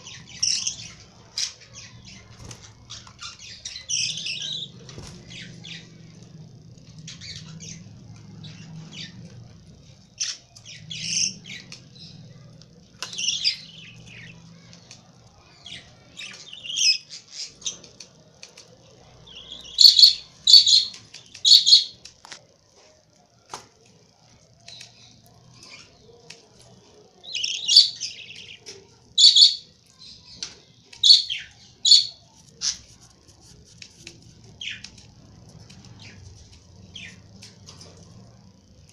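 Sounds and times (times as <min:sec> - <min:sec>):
birds chirping and squawking: 0:00.0 - 0:18.0, 0:19.2 - 0:22.0, 0:26.8 - 0:32.9, 0:34.6 - 0:38.2.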